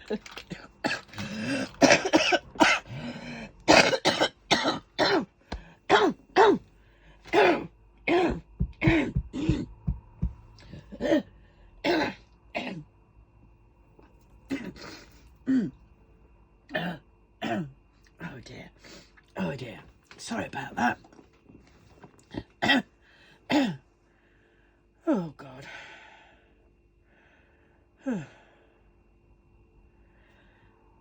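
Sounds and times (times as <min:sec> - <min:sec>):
woman coughing: 0:00.2 - 0:03.0, 0:03.7 - 0:05.3, 0:05.9 - 0:06.6, 0:07.3 - 0:09.9, 0:10.7 - 0:12.8, 0:16.8 - 0:17.7, 0:22.4 - 0:22.9, 0:23.5 - 0:23.8.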